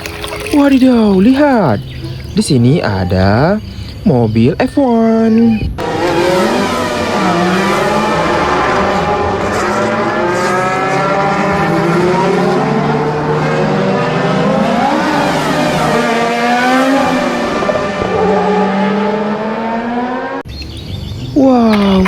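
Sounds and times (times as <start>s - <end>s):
racing car engines at high revs: 5.6s - 20.5s.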